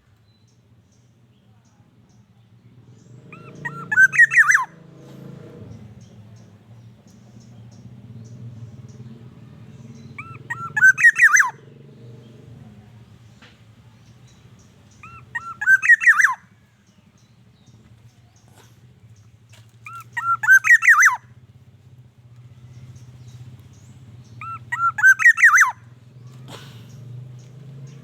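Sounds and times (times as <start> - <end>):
bird fluty whistled calls: 3.3 - 4.8, 9.9 - 11.6, 14.9 - 16.5, 19.8 - 21.3, 24.2 - 25.9.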